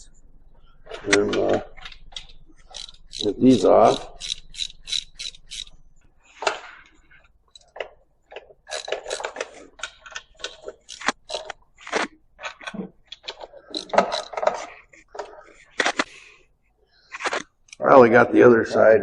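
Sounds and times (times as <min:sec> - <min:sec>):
ratchet wrench clicking: 0:01.6 - 0:05.8, 0:08.7 - 0:09.5, 0:10.1 - 0:11.6, 0:13.7 - 0:14.5.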